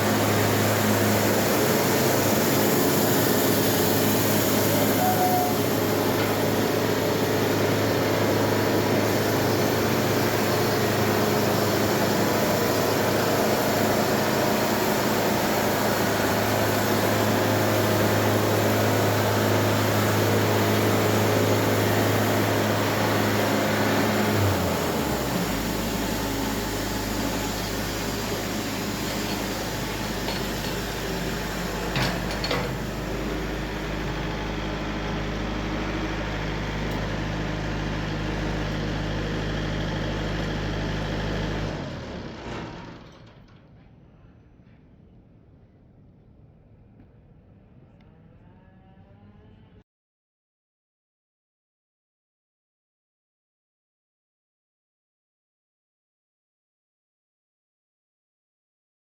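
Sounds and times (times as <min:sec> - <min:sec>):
engine running: 0:00.0 - 0:43.1.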